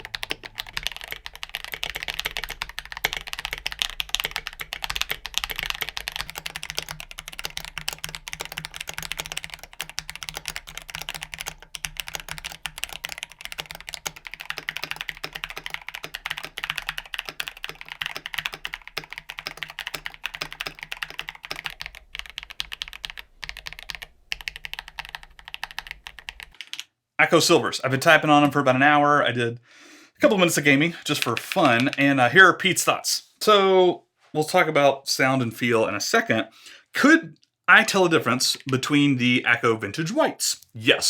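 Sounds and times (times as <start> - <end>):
fast mechanical keyboard typing: 0.0 - 26.9, 31.1 - 32.2.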